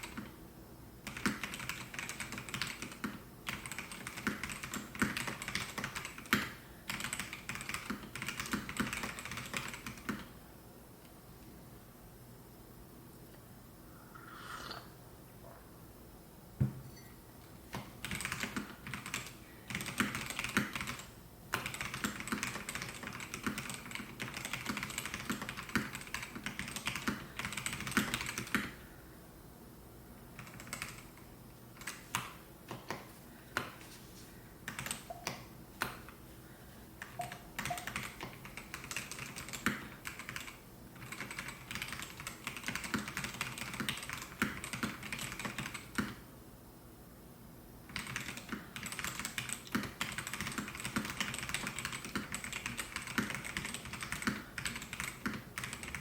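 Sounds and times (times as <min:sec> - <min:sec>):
mechanical keyboard typing: 0:01.0 - 0:10.3, 0:17.7 - 0:28.7, 0:30.4 - 0:31.1, 0:34.7 - 0:36.0, 0:37.0 - 0:46.2, 0:47.9 - 0:56.0.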